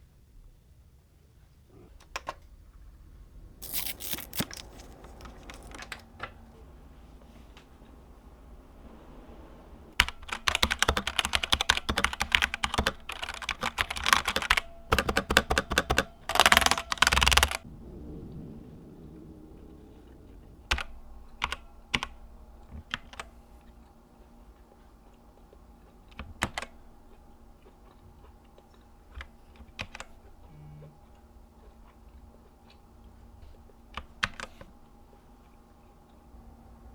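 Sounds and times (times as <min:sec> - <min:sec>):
mechanical keyboard typing: 0:03.6 - 0:06.4, 0:10.0 - 0:17.6, 0:26.1 - 0:26.8, 0:29.2 - 0:30.2, 0:33.9 - 0:34.7.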